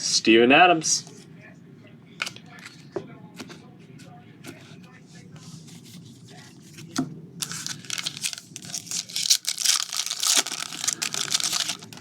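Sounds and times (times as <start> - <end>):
plastic wrapper tearing and crinkling: 7.4 - 12.0.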